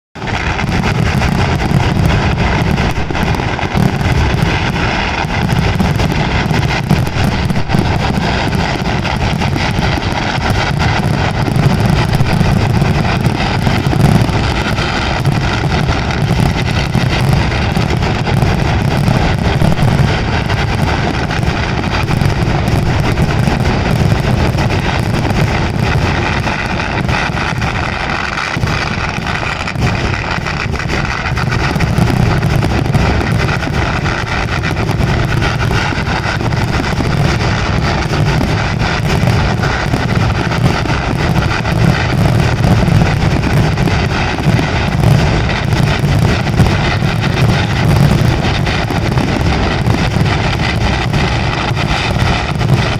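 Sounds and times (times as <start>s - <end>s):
fireworks barrage rumbling: 0.2s - 52.9s.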